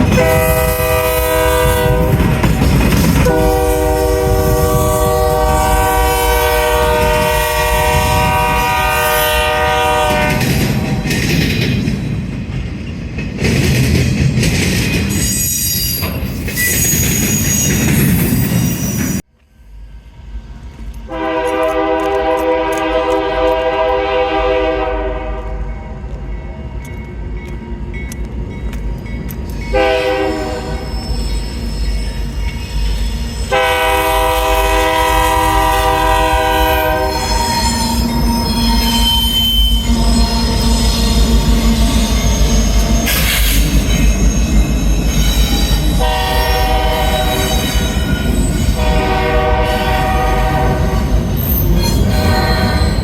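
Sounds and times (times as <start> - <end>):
train rumble: 0.0 - 53.0
locomotive air horn blasts: 0.1 - 2.3, 3.2 - 11.0, 21.1 - 25.6, 29.7 - 30.9, 33.5 - 41.4, 46.0 - 47.7, 48.7 - 51.1, 52.0 - 53.0.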